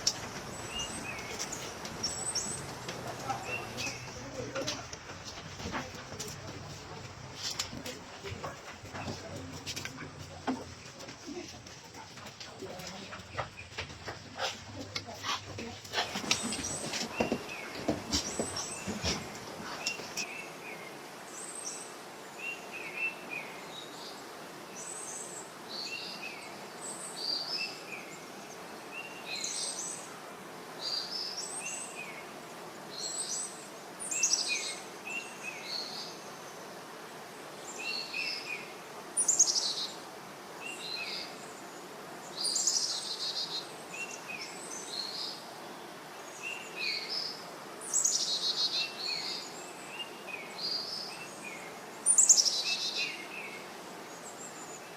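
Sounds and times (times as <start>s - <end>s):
birds chirping: 0.0s - 21.8s
steady background hiss: 0.0s - 54.9s.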